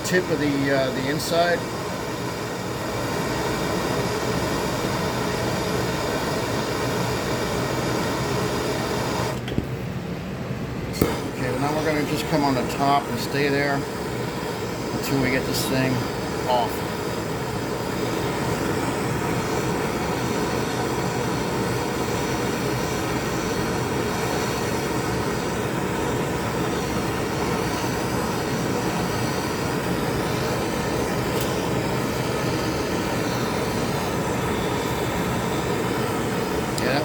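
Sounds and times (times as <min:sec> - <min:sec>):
gas torch flame: 0:00.0 - 0:09.8, 0:10.9 - 0:37.0.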